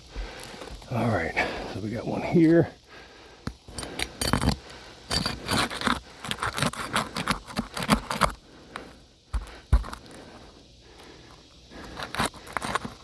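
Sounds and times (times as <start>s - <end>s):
tool scraping under shingles: 3.4s - 13.0s.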